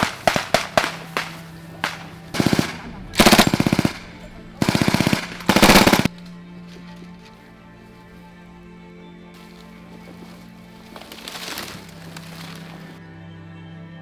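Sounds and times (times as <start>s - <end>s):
machine gun firing: 0.0s - 6.1s.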